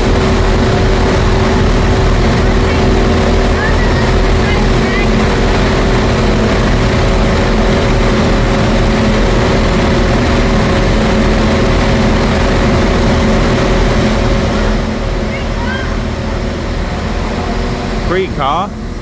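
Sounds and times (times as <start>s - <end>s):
train engine rumbling: 0.0s - 19.0s.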